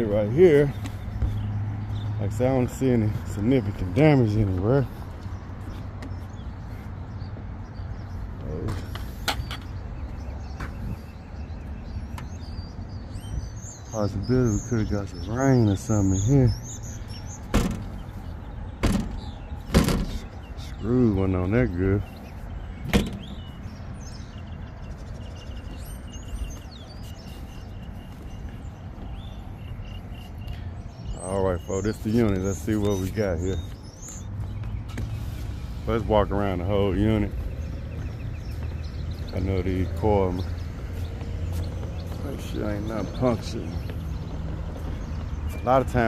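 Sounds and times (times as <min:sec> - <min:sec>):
birds chirping: 0:00.0 - 0:46.0
clicks and knocks on metal cabinet: 0:17.5 - 0:18.0, 0:18.8 - 0:20.2.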